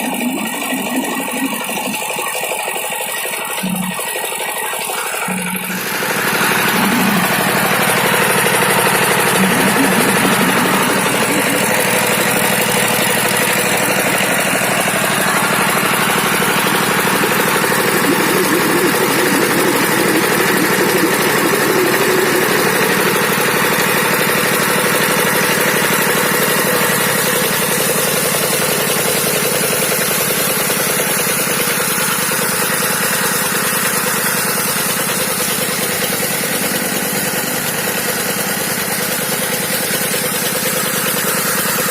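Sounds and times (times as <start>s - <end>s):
diesel engine running: 0.0s - 41.9s
water pump: 0.0s - 41.9s.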